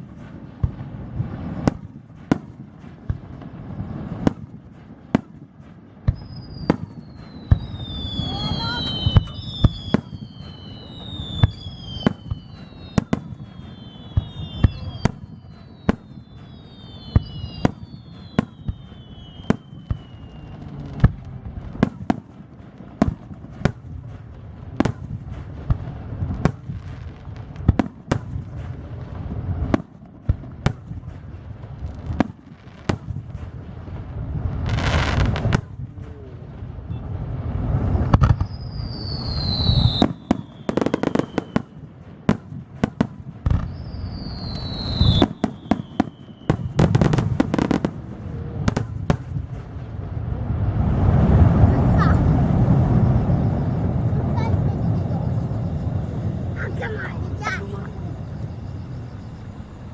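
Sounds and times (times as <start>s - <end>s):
fireworks crackling: 0.0s - 59.9s
fireworks exploding: 0.0s - 59.9s
falling whistling tones: 6.1s - 20.7s, 38.0s - 41.8s, 43.6s - 47.2s, 50.8s - 59.9s.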